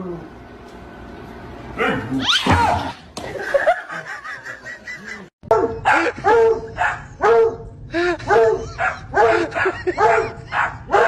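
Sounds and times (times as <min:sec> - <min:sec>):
person laughing: 0:03.3 - 0:05.3, 0:07.9 - 0:10.6
dog barking: 0:05.5 - 0:07.6, 0:08.3 - 0:11.0.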